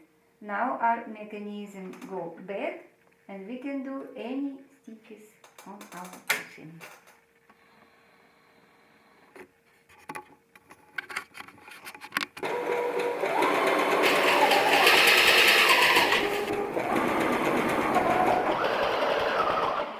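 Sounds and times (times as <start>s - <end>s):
sewing machine running: 12.4s - 19.9s.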